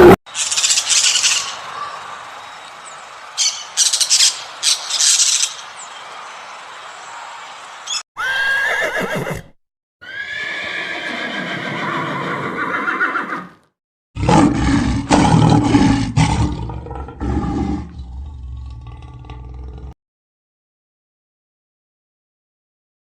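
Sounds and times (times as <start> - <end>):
horse whinnying: 8.2 - 13.6.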